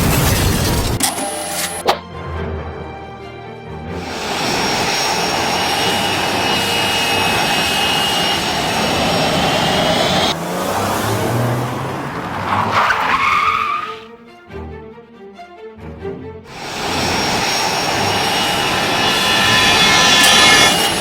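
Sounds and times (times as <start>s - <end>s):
tyres skidding with squeal: 4.0s - 14.2s, 16.5s - 21.0s.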